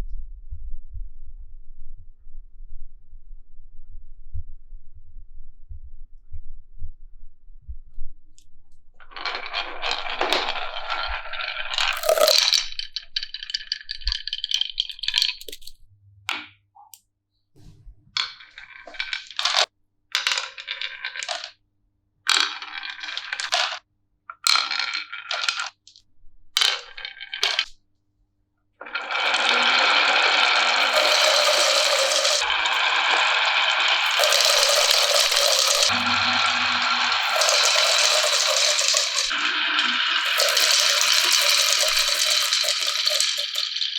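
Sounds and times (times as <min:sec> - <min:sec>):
marbles rolling and rattling on tracks: 0:09.1 - 0:15.7, 0:18.2 - 0:21.6, 0:22.4 - 0:23.8, 0:24.4 - 0:25.8, 0:26.6 - 0:27.7, 0:28.9 - 0:43.9.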